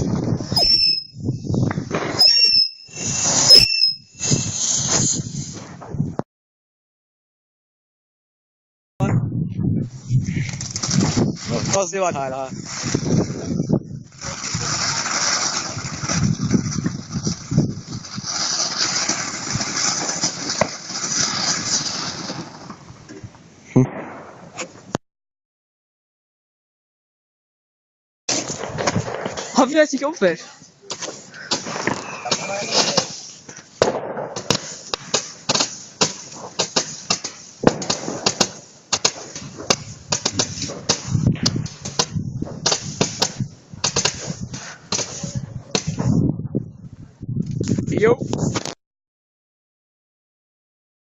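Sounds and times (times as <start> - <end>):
fireworks hissing and crackling: 0.0 - 5.9, 9.9 - 24.7, 28.3 - 46.1
sharp crack: 14.2 - 17.4, 18.0 - 22.8, 30.9 - 46.0.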